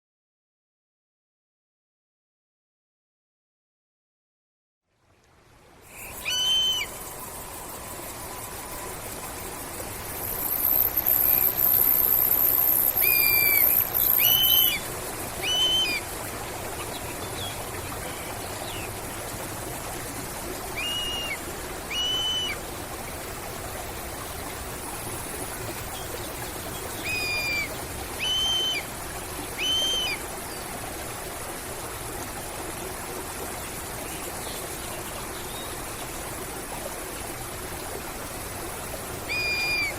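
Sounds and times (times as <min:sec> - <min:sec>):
loud high-pitched hiss: 0:05.8 - 0:16.0
hawk calling: 0:06.0 - 0:07.0, 0:39.3 - 0:39.9.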